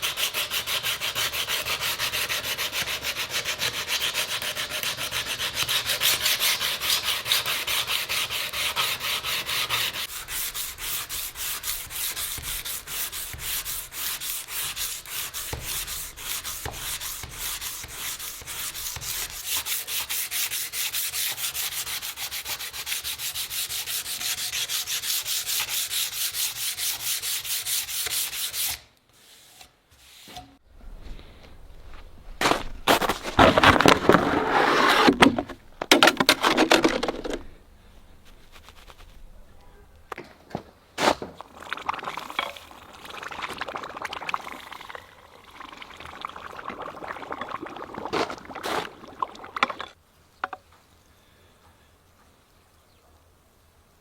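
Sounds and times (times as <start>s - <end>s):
sandpaper rubbing: 0.0s - 30.4s, 32.4s - 37.4s, 38.2s - 39.4s.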